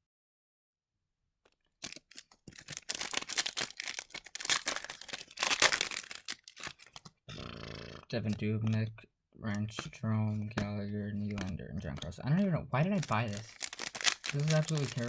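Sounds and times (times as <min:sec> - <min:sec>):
foil wrapper tearing and crinkling: 0:01.8 - 0:07.1, 0:13.0 - 0:15.0.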